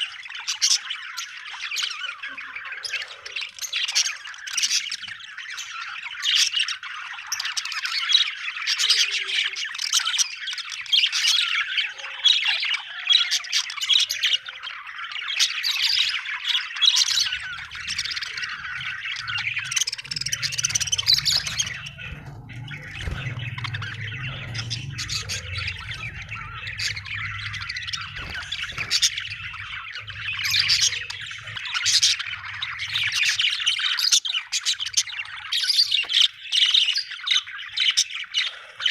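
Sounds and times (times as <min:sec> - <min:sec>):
budgerigars chirping: 0:00.0 - 0:38.9
low hum: 0:17.4 - 0:33.6.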